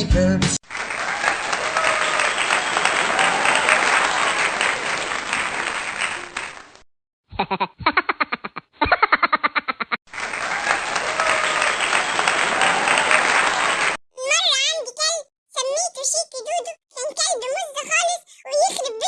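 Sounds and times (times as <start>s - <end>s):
crowd applause and cheering: 0.6s - 6.8s, 10.1s - 14.0s.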